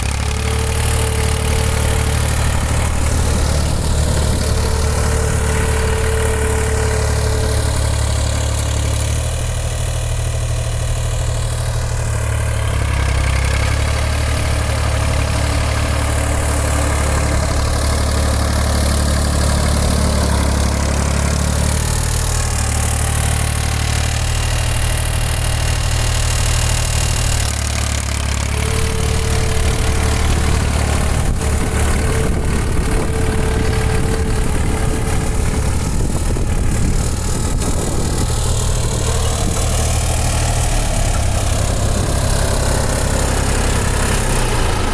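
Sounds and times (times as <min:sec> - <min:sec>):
tractor diesel engine running: 0:00.0 - 0:44.9.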